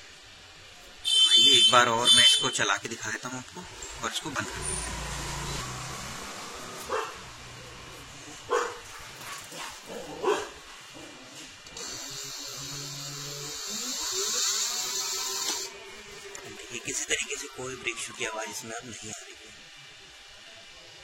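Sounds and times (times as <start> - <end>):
dog barking: 6.9 - 7.2, 8.5 - 11.1.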